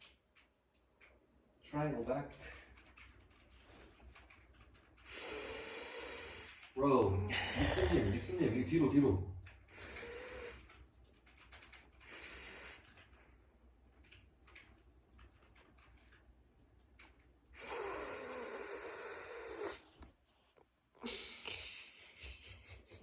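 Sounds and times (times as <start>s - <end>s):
faint clicks: 0.0s - 1.5s, 2.1s - 7.1s, 9.0s - 20.7s
person sniffing: 5.2s - 8.6s.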